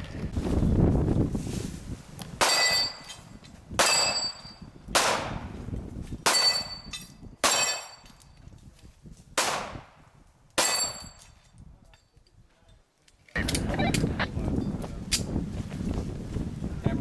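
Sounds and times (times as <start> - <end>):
steel targets clanging: 2.4 - 4.6, 6.3 - 8.2
gunshots: 5.0 - 5.4, 9.4 - 9.9.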